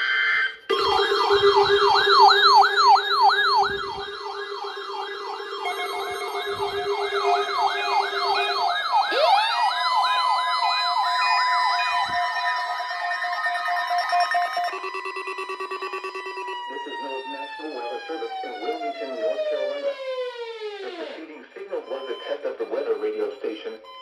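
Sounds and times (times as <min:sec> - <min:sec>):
siren-like warbling alarm: 0:00.0 - 0:24.0
steady low alarm tone: 0:00.4 - 0:24.0
rising alarm tone: 0:00.5 - 0:24.0.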